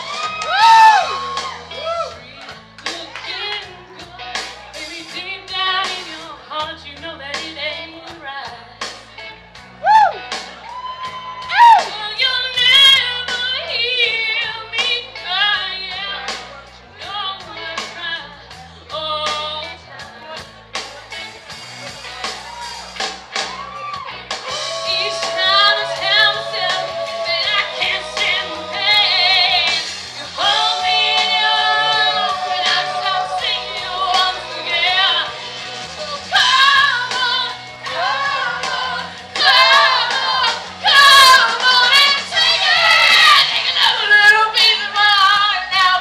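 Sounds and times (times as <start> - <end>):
woman singing with vibrato: 24.5 - 46.0.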